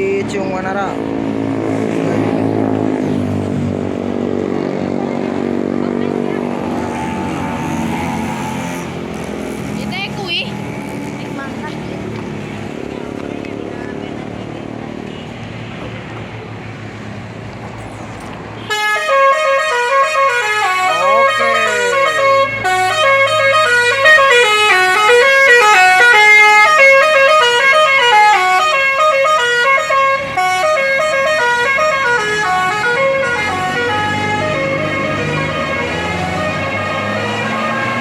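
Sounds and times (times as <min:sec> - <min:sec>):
bus engine running: 0:00.0 - 0:38.0
multi-note air horn tune: 0:18.6 - 0:38.0.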